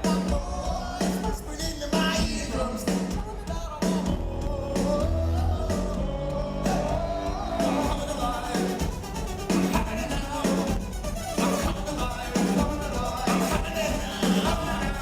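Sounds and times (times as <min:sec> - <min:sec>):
drums: 0:00.0 - 0:15.0
person singing: 0:00.0 - 0:15.0
pulsing bass line: 0:04.1 - 0:15.0.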